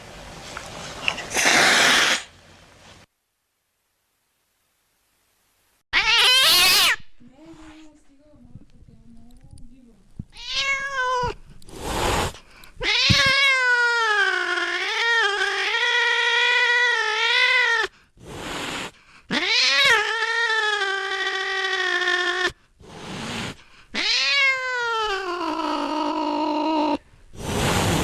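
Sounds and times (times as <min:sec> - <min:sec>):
cat yowling: 0:06.0 - 0:07.0, 0:10.4 - 0:11.4, 0:12.8 - 0:17.9, 0:19.3 - 0:22.6, 0:24.0 - 0:27.0.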